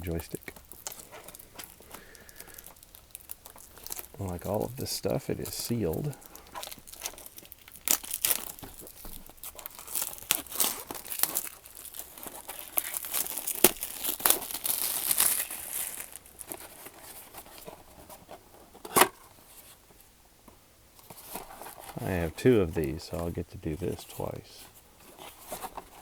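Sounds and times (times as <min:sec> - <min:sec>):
plastic packaging tearing and crinkling: 0:00.0 - 0:18.2.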